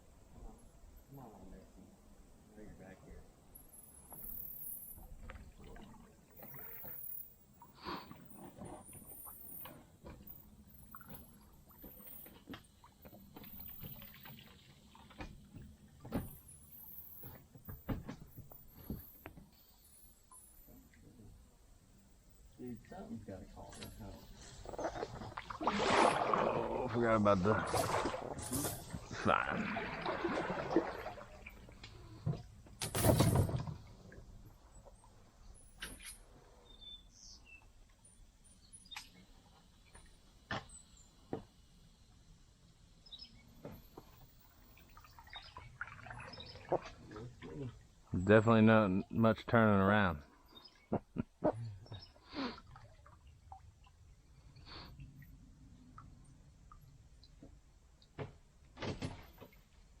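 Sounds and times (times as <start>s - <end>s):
paddle strokes: 23.6s - 32.7s, 44.8s - 48.2s
dripping water: 23.7s - 32.2s, 44.0s - 48.2s, 51.9s - 58.2s
birds chirping faintly: 34.4s - 52.4s.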